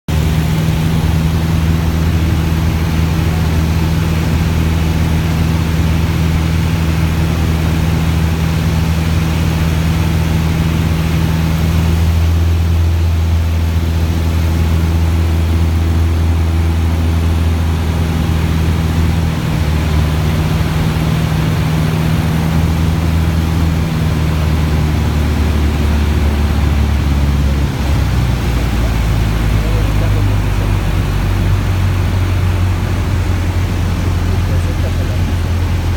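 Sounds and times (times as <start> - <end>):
propeller plane engine drone: 0.1 - 35.9.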